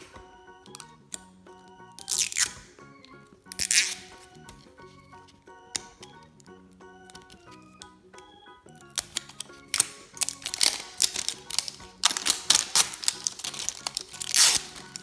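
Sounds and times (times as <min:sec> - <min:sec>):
background music: 0:00.0 - 0:15.0
plastic packaging crinkling: 0:08.9 - 0:15.0.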